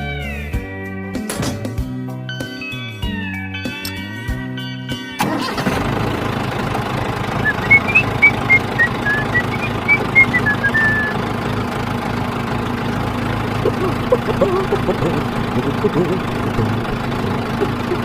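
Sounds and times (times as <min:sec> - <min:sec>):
background music: 0:00.0 - 0:05.8
engine-like running sound: 0:05.2 - 0:18.0
high chirping notes: 0:07.4 - 0:11.2, 0:13.6 - 0:18.0.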